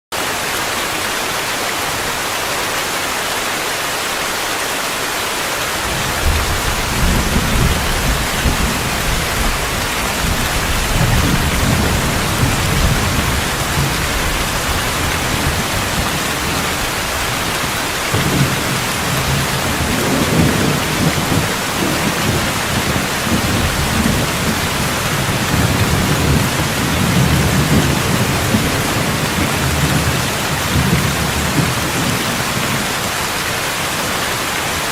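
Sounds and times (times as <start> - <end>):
heavy rain: 0.1 - 34.9
low rolling thunder: 5.8 - 33.0.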